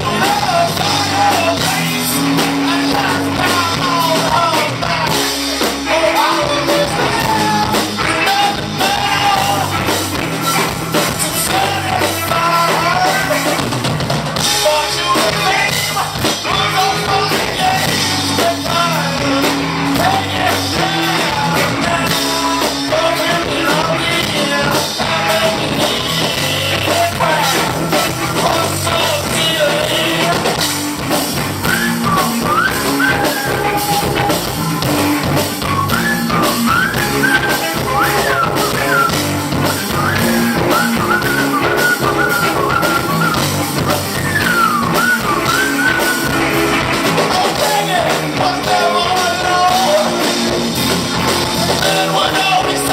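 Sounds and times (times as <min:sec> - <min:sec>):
person singing: 0:00.0 - 0:13.8, 0:14.4 - 0:30.6, 0:44.2 - 0:50.7, 0:51.6 - 0:52.9
rock band playing live: 0:00.0 - 0:52.9.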